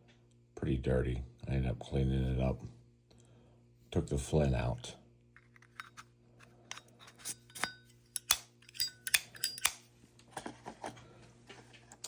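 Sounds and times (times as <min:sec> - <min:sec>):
low electrical hum: 0:00.0 - 0:12.0
metal clicks and clinks: 0:06.7 - 0:09.8.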